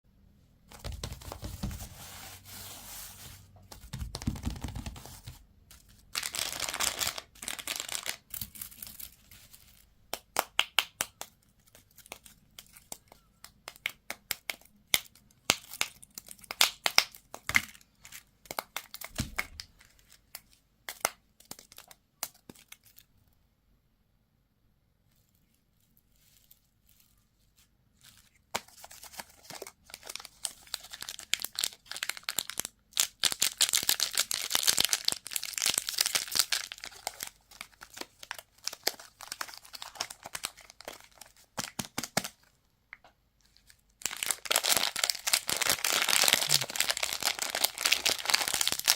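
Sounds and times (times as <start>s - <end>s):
wrappers crinkling and tearing: 5.8s - 9.9s, 28.0s - 42.4s, 43.5s - 48.9s.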